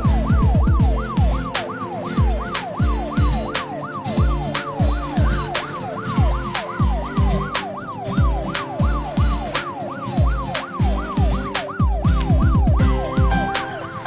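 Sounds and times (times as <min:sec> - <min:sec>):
electronic siren wailing: 0:00.0 - 0:14.0
music with thumping beat: 0:00.0 - 0:14.0.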